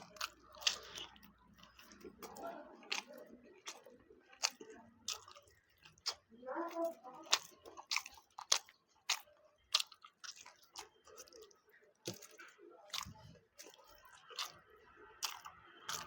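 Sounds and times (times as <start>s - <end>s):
close chewing with mouth clicks: 0.0s - 16.0s.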